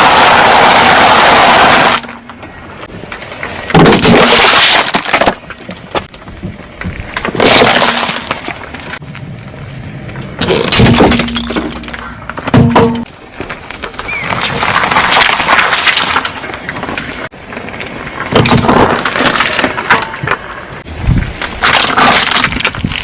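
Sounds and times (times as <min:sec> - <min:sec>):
objects crushed under car wheels: 0:03.4 - 0:06.2, 0:06.8 - 0:09.0, 0:10.4 - 0:17.3, 0:18.2 - 0:20.4, 0:21.4 - 0:23.0.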